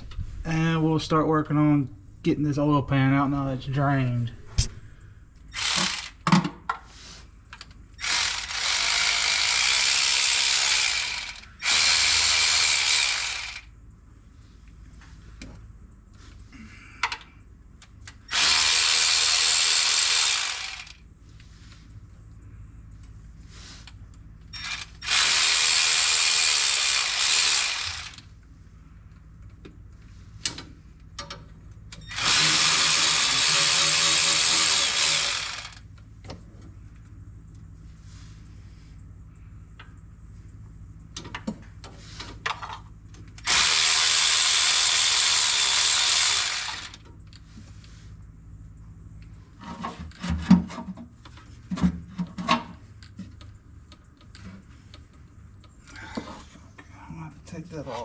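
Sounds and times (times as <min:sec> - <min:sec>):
power tool spinning out bolts: 0:05.5 - 0:06.2, 0:08.0 - 0:13.7, 0:18.3 - 0:21.0, 0:24.6 - 0:28.3, 0:32.0 - 0:35.8, 0:43.4 - 0:47.1.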